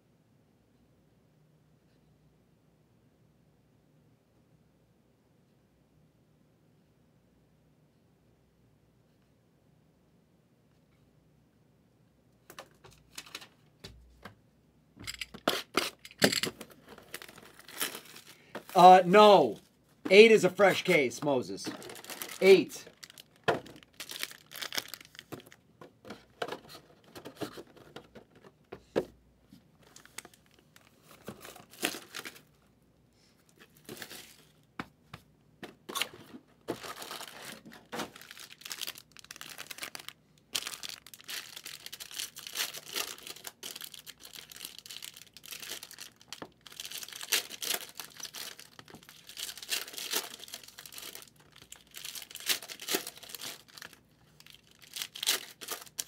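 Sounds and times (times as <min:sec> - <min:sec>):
card pack wrappers crinkling: 0:15.3 - 0:25.6, 0:29.8 - 0:32.5, 0:33.5 - 0:34.6, 0:35.9 - 0:56.0.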